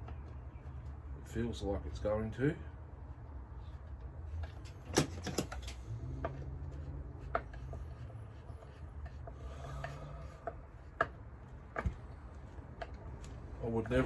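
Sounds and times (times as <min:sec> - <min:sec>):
parts rubbing and clicking: 0:03.7 - 0:14.0.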